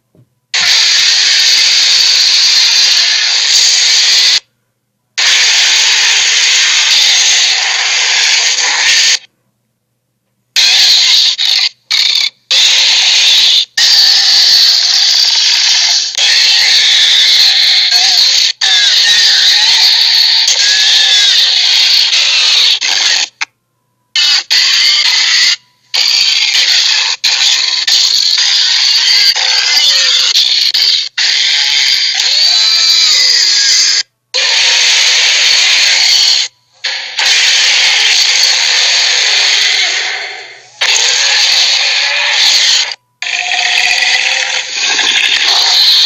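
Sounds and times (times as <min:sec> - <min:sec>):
hissing creature sound effects: 0:05.2 - 0:09.3, 0:34.4 - 0:42.9, 0:44.1 - 0:46.0
wavering screech tones: 0:24.2 - 0:46.0.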